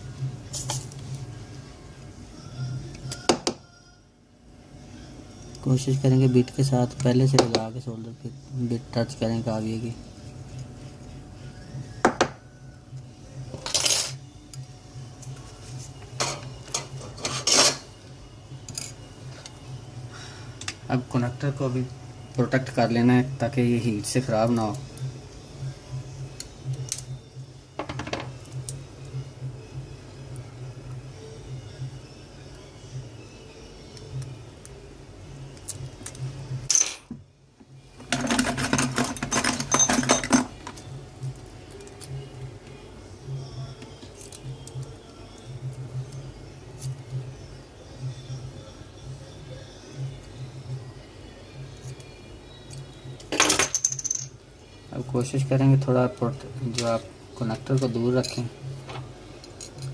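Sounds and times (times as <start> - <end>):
steady low hum: 3.8 - 38.1
metal tools clinking and scraping: 13.5 - 14.2, 16.2 - 17.9, 38.0 - 40.8, 57.8 - 58.5, 59.4 - 59.9.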